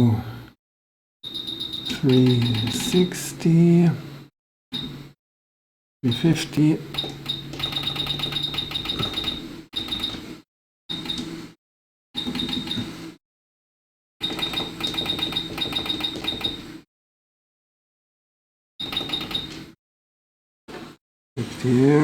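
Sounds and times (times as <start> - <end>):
rapid even ticking: 1.4 - 3.2.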